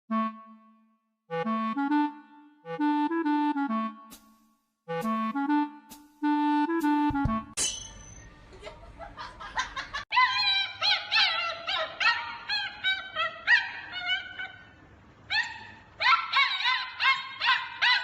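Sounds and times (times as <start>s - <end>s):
high-pitched animal cries: 10.1s - 14.7s.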